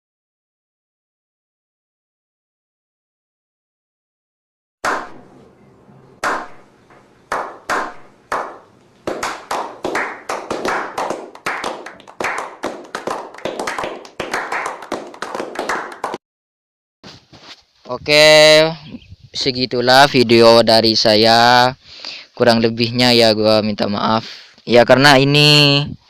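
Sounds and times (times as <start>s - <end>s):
sharp ringing claps: 4.9s - 5.4s, 6.2s - 16.2s.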